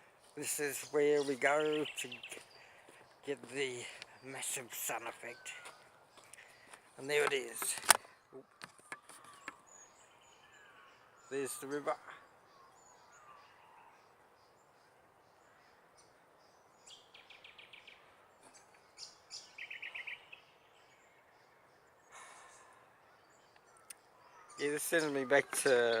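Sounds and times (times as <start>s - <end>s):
bird trills: 16.8s - 21.1s, 22.0s - 26.0s
sharp bird chirps: 16.8s - 21.1s.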